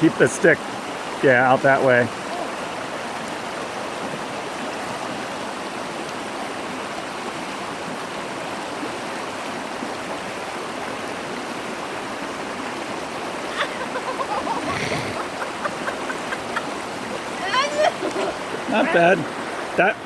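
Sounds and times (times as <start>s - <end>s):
creek water rushing: 0.0s - 20.0s.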